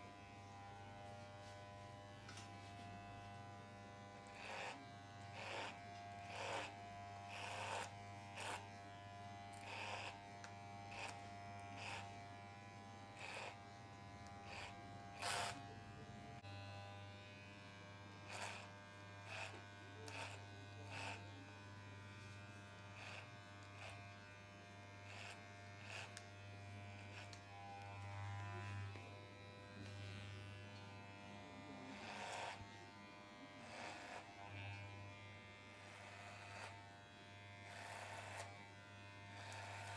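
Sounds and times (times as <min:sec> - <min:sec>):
electric hair clipper buzzing: 0:00.0 - 0:39.9.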